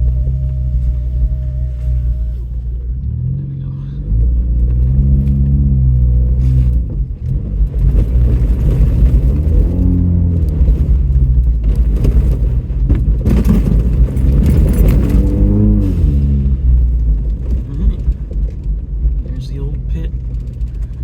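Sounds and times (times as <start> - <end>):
off-road vehicle engine revving: 0.0 - 21.0
body knocks and rattles: 4.2 - 21.0.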